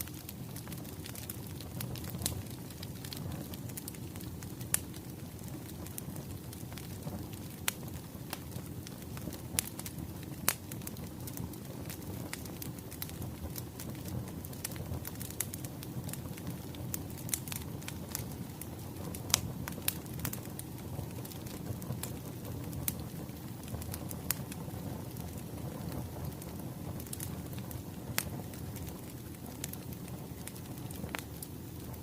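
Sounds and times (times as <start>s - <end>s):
wood fire crackling and popping: 0.0s - 32.0s.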